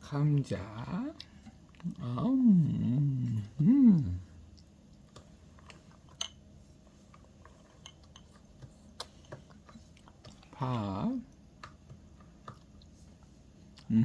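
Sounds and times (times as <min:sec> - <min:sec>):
baby chewing and mouth sounds: 0:00.0 - 0:14.0.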